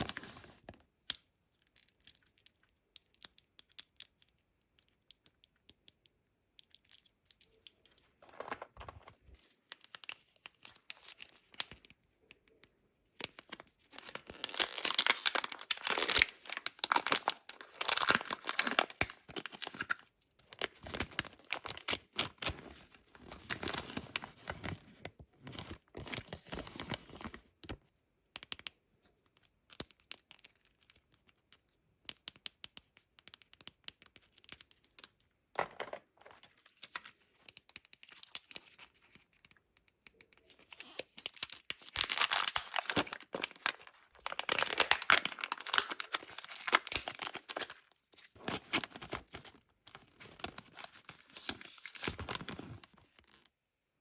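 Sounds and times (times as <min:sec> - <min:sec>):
wrappers tearing and crinkling: 0:13.4 - 0:20.0, 0:40.8 - 0:53.4.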